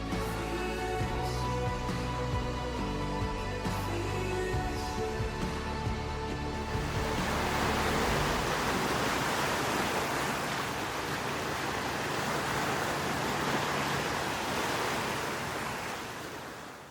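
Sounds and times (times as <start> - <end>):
water rushing: 6.3 - 16.9.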